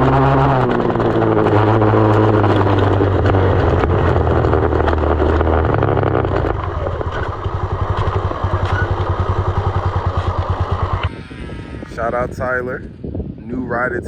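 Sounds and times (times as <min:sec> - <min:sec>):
dirt bike engine putter: 0:00.0 - 0:11.1.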